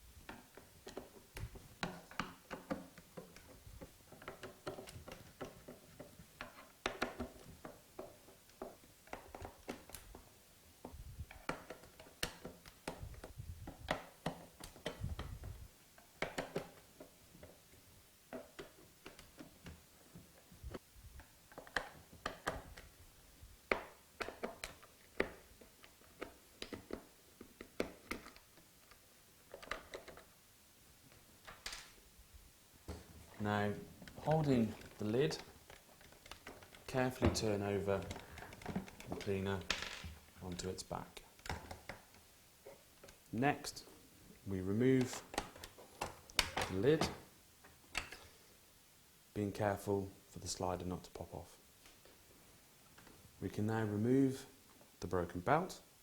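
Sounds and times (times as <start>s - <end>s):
screwdriver clicks and taps: 23.7s - 28.4s, 35.7s - 37.4s.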